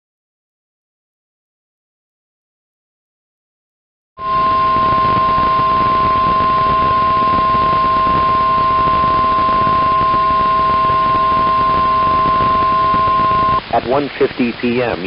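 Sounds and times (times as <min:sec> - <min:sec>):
high-pitched alarm tone: 0:04.2 - 0:13.6
radio hiss: 0:06.1 - 0:15.0.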